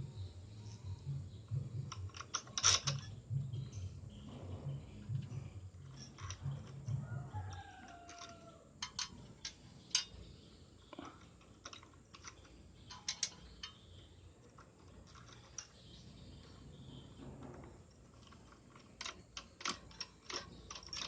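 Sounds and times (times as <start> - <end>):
metal parts clicking: 0.2 - 21.0.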